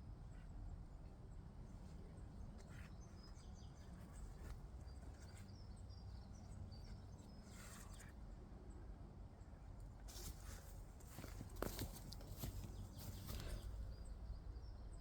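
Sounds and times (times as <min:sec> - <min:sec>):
small birds chirping: 0:00.2 - 0:08.1, 0:11.1 - 0:15.0
soft rustles: 0:01.7 - 0:05.7, 0:10.0 - 0:14.0.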